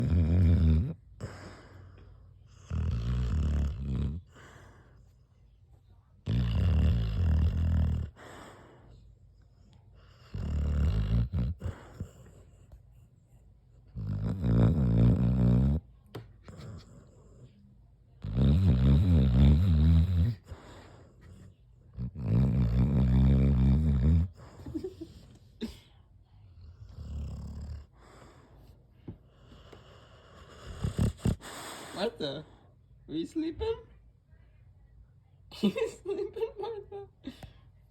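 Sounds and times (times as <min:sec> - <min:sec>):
dog snoring: 0:00.0 - 0:05.0, 0:06.2 - 0:09.0, 0:10.0 - 0:12.7, 0:13.9 - 0:17.5, 0:18.2 - 0:25.3, 0:26.4 - 0:32.4
dog breathing quietly: 0:01.2 - 0:05.3, 0:08.0 - 0:13.2, 0:26.7 - 0:32.8.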